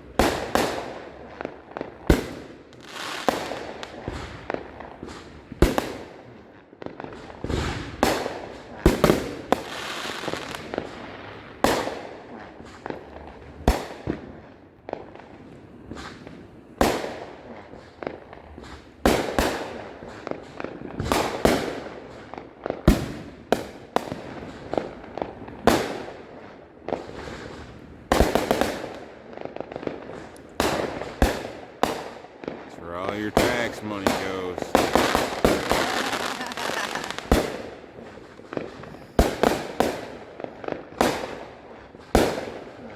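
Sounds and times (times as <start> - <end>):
fireworks bangs: 30.6 - 41.4
firework crackle: 32.8 - 42.9.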